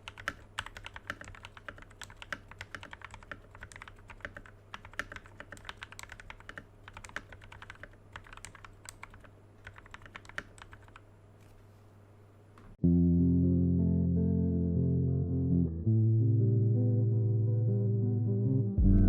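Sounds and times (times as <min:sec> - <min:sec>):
mechanical keyboard typing: 0:00.0 - 0:11.0.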